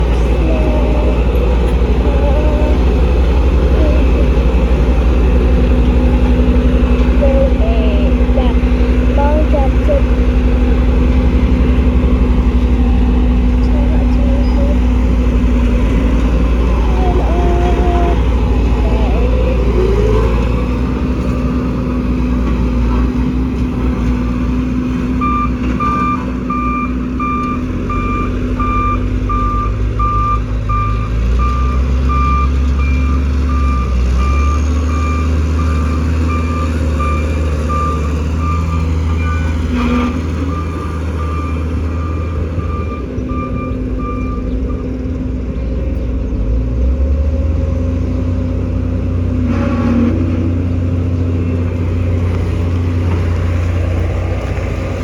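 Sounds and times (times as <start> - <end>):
bulldozer diesel engine under load: 0.0 - 55.0
reversing alarm beeping: 25.2 - 44.9.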